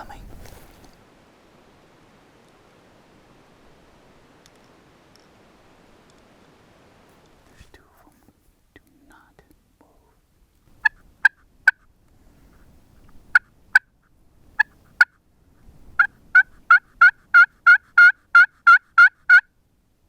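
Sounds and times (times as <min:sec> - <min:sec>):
turkey yelps: 0:16.0 - 0:19.4.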